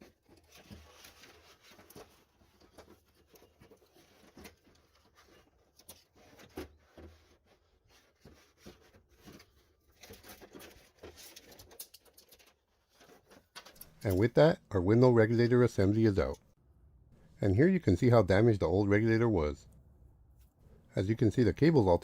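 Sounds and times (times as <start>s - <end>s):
faint metal scraping and clicking: 0.0s - 14.6s.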